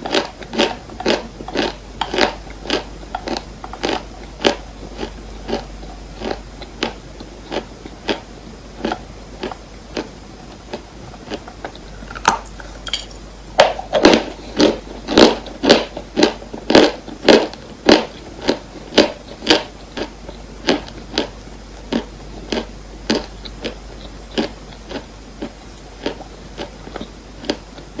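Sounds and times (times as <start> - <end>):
chalk crunching when chewed: 0.0 - 12.9, 14.0 - 28.0.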